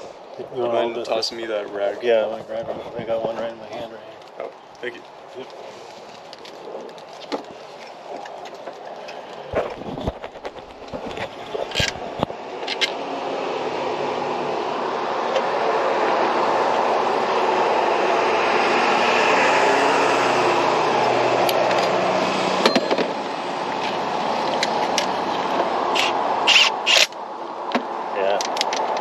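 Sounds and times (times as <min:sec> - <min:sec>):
vehicle passing by: 0:11.5 - 0:26.4.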